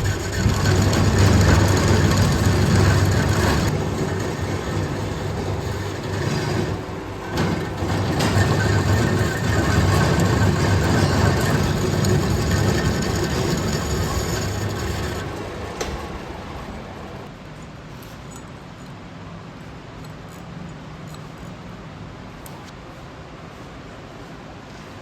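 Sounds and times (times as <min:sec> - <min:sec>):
metal lathe running: 0:00.0 - 0:17.3.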